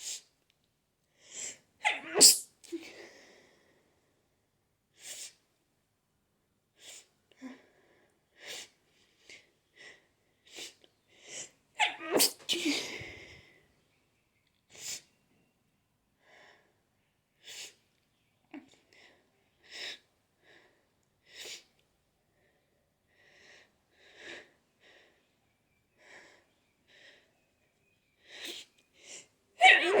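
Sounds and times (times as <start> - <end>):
person sneezing: 1.8 - 2.5, 11.8 - 13.0, 29.6 - 30.0.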